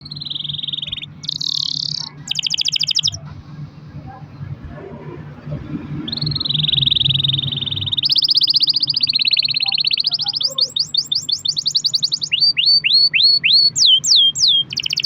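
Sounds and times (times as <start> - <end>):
canary singing trills: 0.0 - 15.0.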